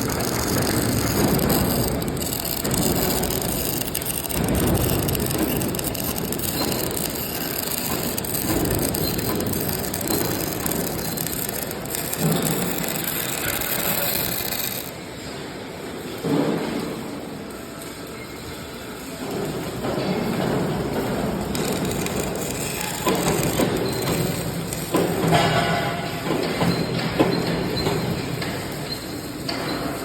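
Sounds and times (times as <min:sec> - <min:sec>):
arc welding crackling: 0:00.0 - 0:15.2, 0:21.3 - 0:25.8.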